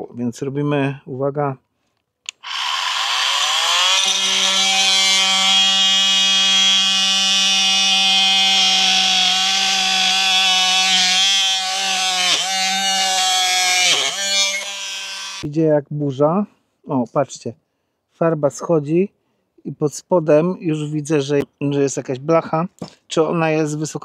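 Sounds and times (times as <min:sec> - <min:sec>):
oscillating tool cutting wood: 0:02.3 - 0:15.5.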